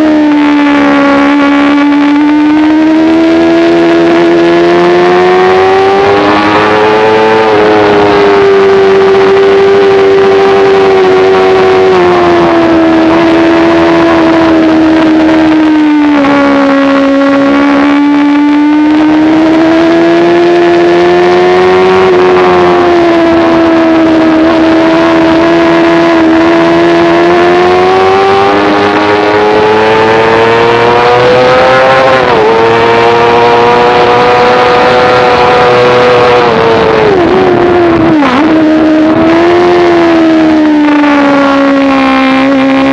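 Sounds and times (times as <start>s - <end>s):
motorcycle engine at high revs: 0.0s - 42.9s
wind rush: 27.8s - 42.9s.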